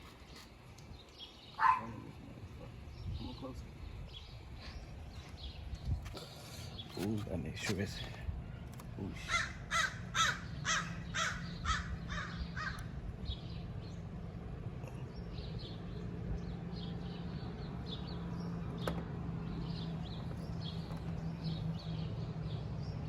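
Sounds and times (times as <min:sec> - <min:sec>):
birds cawing: 0:01.5 - 0:02.2, 0:08.0 - 0:13.8.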